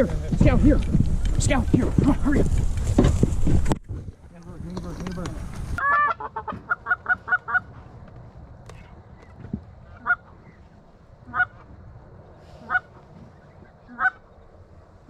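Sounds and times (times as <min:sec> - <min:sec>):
goose honking: 0:05.8 - 0:07.9, 0:09.9 - 0:10.6, 0:11.2 - 0:11.7, 0:12.5 - 0:14.3.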